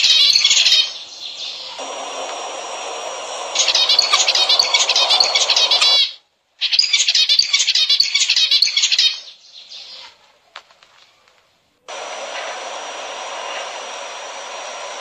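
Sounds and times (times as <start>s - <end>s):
finches chirping: 0.0s - 10.2s.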